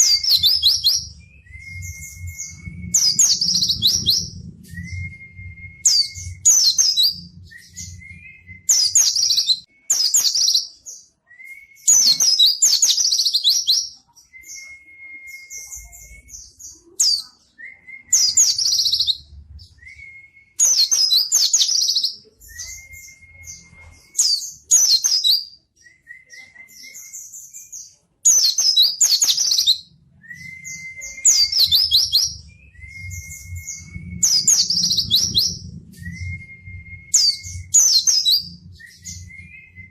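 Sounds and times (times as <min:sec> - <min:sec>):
bird whistled note: 0:30.3 - 0:39.9.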